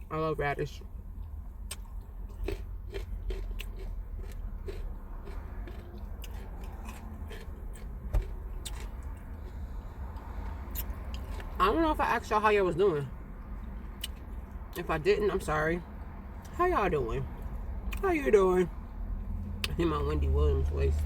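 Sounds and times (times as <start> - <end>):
chewing and biting food: 1.3 - 11.6
food crunching: 1.6 - 11.6.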